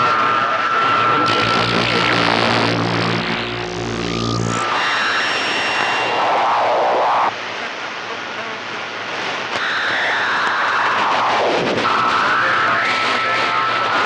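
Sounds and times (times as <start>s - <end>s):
radio hiss and band noise: 0.0s - 14.0s
warbling garbled radio signals: 0.3s - 7.3s.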